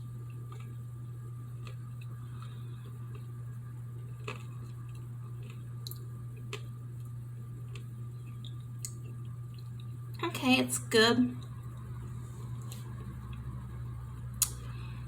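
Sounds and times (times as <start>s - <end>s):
steady low hum: 0.0s - 15.0s
wet chewing and mouth sounds: 0.2s - 0.8s, 1.5s - 10.1s.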